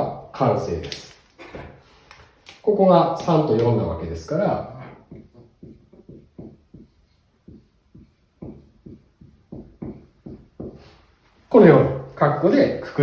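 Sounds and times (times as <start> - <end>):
writing taps and strokes on a board: 4.7 - 11.1.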